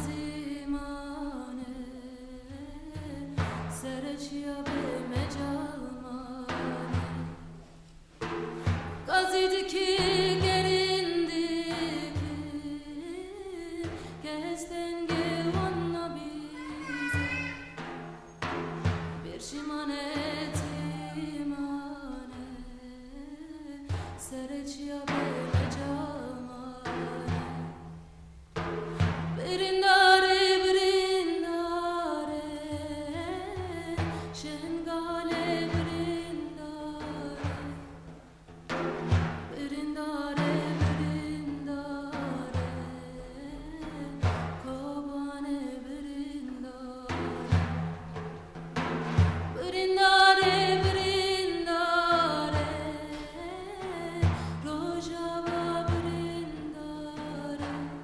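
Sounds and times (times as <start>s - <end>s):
woman singing with vibrato: 0.0s - 7.5s, 9.1s - 17.9s, 19.2s - 27.8s, 29.2s - 38.0s, 39.5s - 47.6s, 49.6s - 58.0s
low drum beats: 0.0s - 58.0s.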